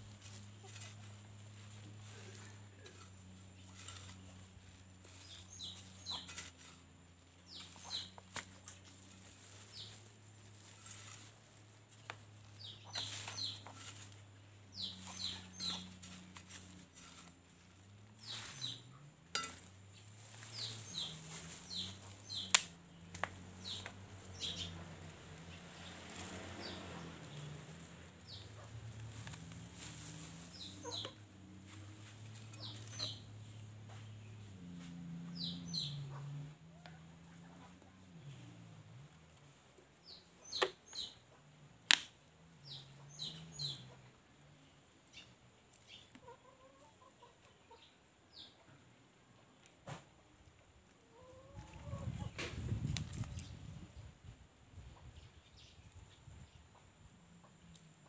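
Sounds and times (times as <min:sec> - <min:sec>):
birds chirping: 0:02.1 - 0:11.6, 0:12.4 - 0:28.9, 0:29.9 - 0:31.3, 0:32.4 - 0:34.5, 0:35.3 - 0:36.2, 0:40.0 - 0:41.4.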